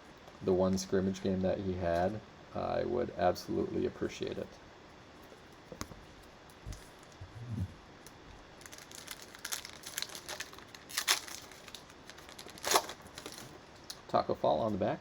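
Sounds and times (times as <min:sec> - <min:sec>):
cellophane wrapper crinkling: 0:08.0 - 0:14.0.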